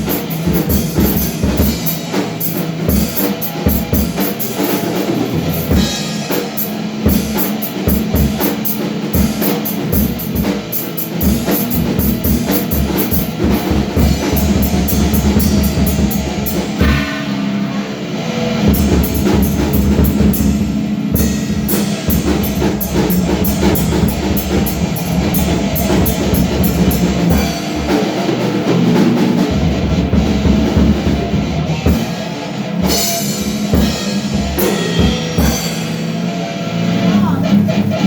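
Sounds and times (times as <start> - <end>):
rock music with drum kit: 0.0 - 38.0.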